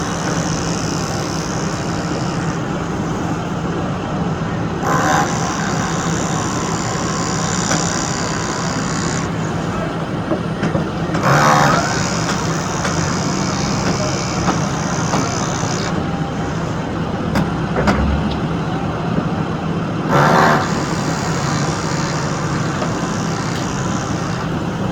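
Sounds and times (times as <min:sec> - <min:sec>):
heavy construction machinery running: 0:00.0 - 0:24.9.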